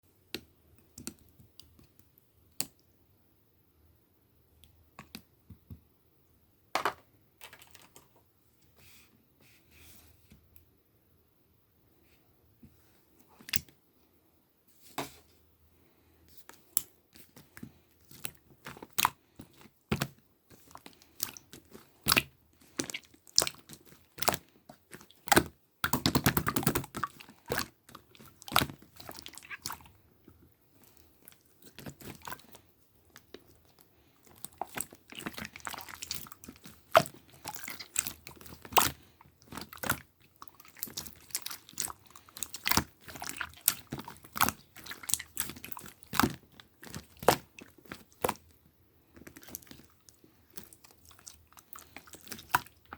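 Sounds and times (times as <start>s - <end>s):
slime squished by hand: 16.3s - 30.0s, 30.8s - 52.9s.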